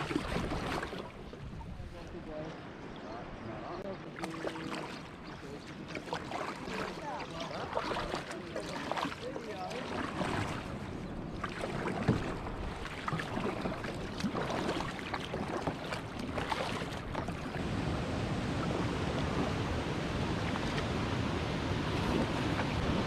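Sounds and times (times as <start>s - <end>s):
wind buffeting microphone: 0.0s - 3.9s
water splashing around a kayak: 0.0s - 23.0s.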